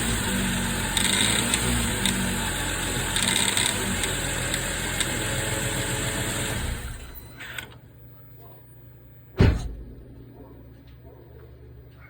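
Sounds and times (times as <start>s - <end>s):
faint hum: 7.8s - 12.0s
heavy thump: 9.4s - 10.5s.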